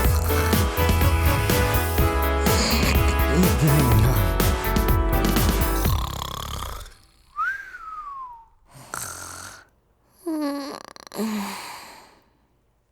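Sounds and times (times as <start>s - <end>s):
snorts: 0.0s - 4.6s, 5.4s - 7.6s, 8.7s - 12.2s
backing music: 0.0s - 6.2s
whistling snore breath: 5.8s - 9.7s.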